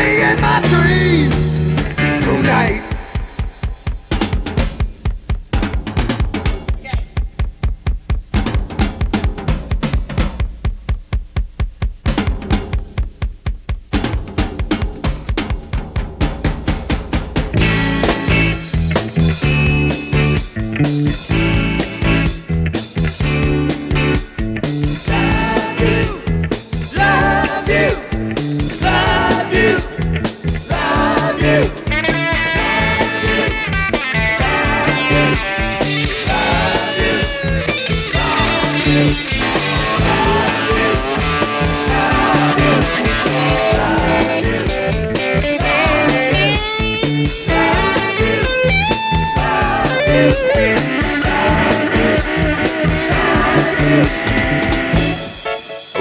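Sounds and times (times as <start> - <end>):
instrumental rock music: 0.0 - 56.0
electric guitar solo: 36.9 - 56.0.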